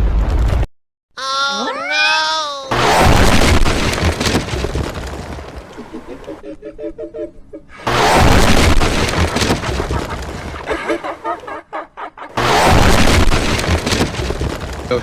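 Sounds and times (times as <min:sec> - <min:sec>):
loud rumbling crash: 0:02.7 - 0:05.8, 0:07.9 - 0:10.7, 0:12.4 - 0:15.0.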